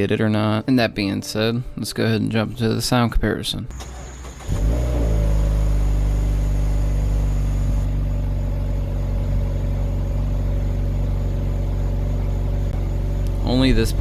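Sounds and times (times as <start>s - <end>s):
car engine idling: 3.7s - 14.0s.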